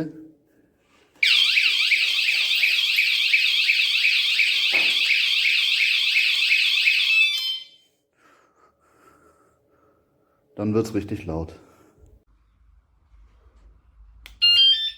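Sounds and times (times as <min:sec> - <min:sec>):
bicycle alarm siren warble: 0:01.2 - 0:07.9, 0:14.4 - 0:14.9.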